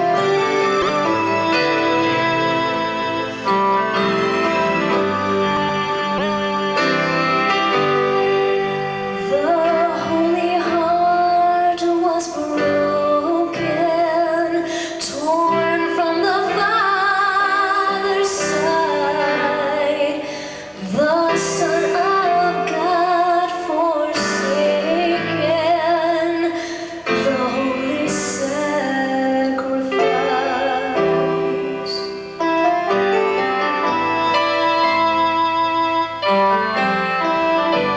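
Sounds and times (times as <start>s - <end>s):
keyboard chords: 0.0s - 37.9s
woman singing with vibrato: 9.1s - 33.2s.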